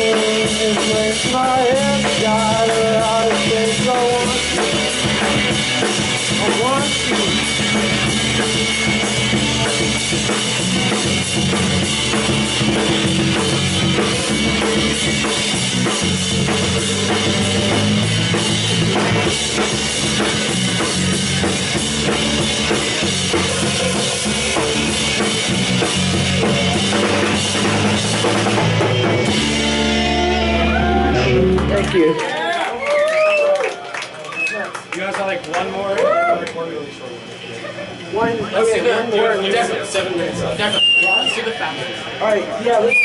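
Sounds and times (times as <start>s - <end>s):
live rock band playing: 0.0s - 32.2s.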